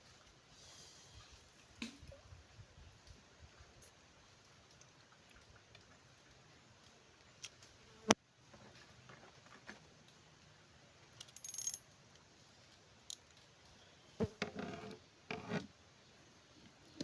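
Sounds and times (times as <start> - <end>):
metallic jingle: 11.3 - 11.8
scraping and rubbing sounds: 14.2 - 15.7.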